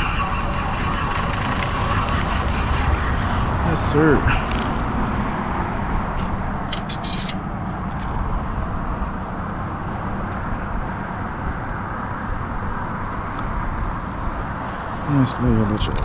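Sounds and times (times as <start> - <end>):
steady rumbling: 0.0 - 9.2.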